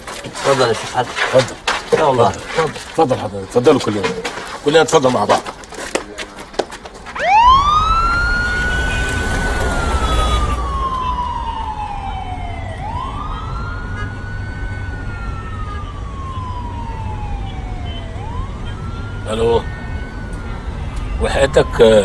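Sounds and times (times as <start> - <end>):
police siren wailing: 7.1 - 22.0
low rumble: 7.4 - 13.1.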